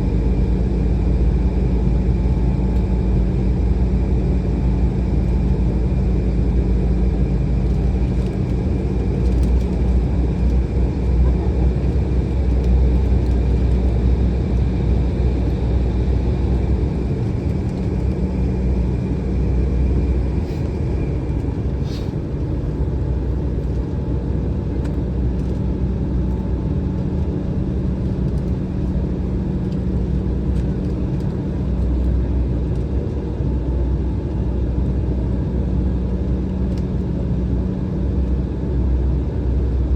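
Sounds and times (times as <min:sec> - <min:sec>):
airliner cabin rumble: 0:00.0 - 0:39.9
steady hum: 0:27.3 - 0:32.6.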